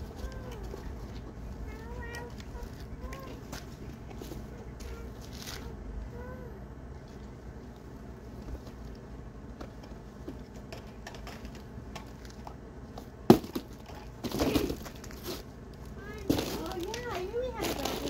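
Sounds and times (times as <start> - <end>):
rustling clatter: 13.3 - 18.0.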